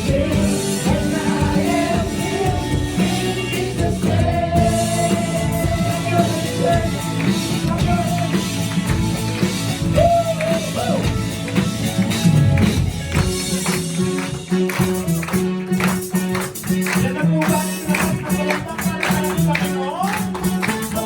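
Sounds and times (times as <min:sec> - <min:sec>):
worship band music: 0:00.0 - 0:21.0.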